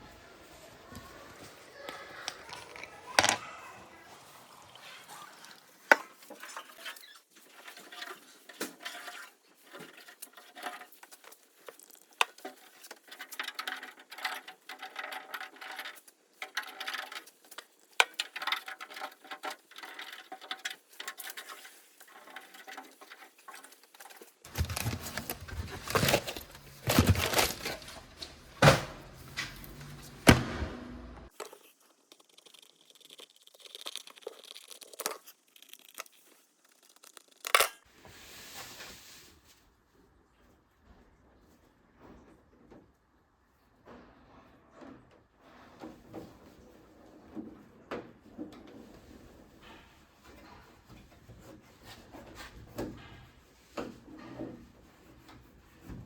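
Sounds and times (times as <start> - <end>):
knocks and handling noise: 0.9 - 3.7, 7.7 - 31.6
parts clicking and rattling: 1.9 - 3.5, 9.7 - 30.4, 31.3 - 37.9.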